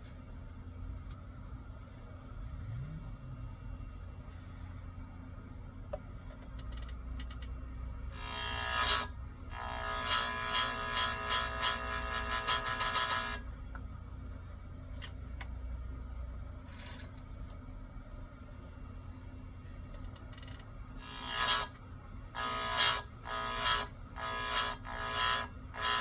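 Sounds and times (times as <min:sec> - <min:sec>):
grinding wheel rasping on chain: 0:08.1 - 0:13.4, 0:20.4 - 0:21.8, 0:22.4 - 0:26.0
grinding wheel ringing whine: 0:08.1 - 0:13.5, 0:20.3 - 0:26.0.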